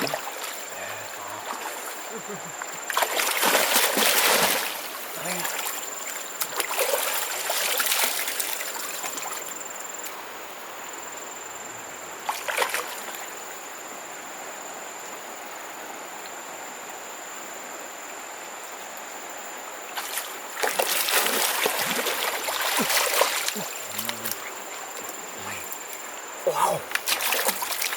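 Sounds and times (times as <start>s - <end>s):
people wading in river: 0.0s - 10.7s, 20.0s - 27.9s
flowing water hiss: 0.0s - 27.9s.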